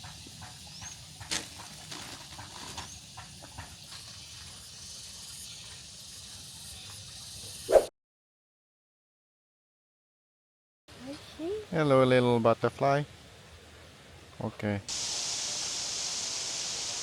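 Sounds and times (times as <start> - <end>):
steady hiss: 0.0 - 7.7, 11.8 - 17.0.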